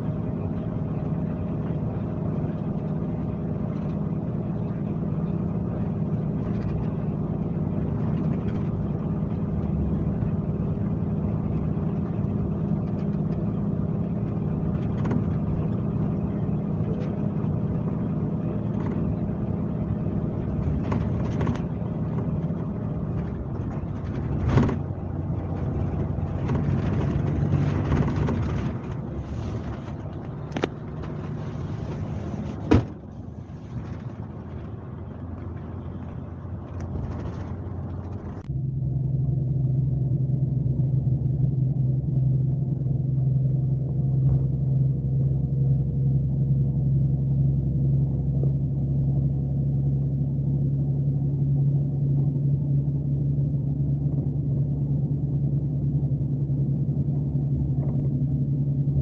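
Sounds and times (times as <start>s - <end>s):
diesel engine drone: 0.0s - 59.0s
road rumble: 0.0s - 59.0s
sharp knocks and rattles: 20.4s - 34.7s.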